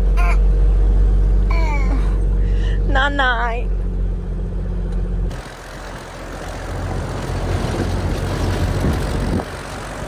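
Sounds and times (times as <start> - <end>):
vehicle engine drone from inside cabin: 0.0 - 10.0
rough driving rumble on dirt track: 2.2 - 10.0.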